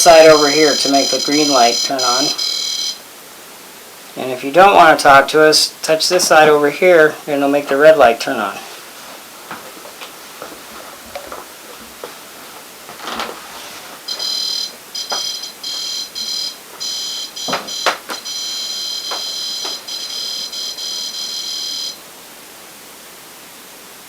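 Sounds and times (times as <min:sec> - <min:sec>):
high-pitched electronic alarm beeping: 0:00.0 - 0:03.0, 0:14.1 - 0:22.0
sharp clicks or knocks: 0:17.4 - 0:18.3.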